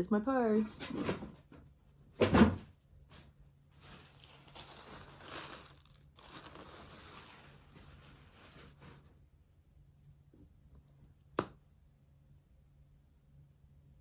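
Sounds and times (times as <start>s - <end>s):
packaging crinkling: 3.8s - 9.0s.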